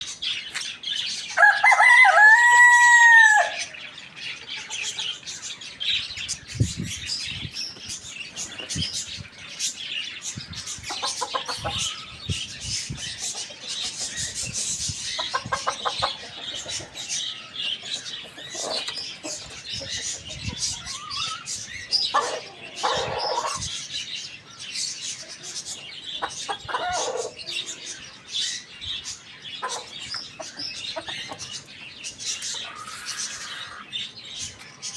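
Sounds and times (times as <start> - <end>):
chickens clucking: 0.0 - 34.9
small birds chirping: 0.0 - 34.9
rooster crowing: 1.4 - 3.7.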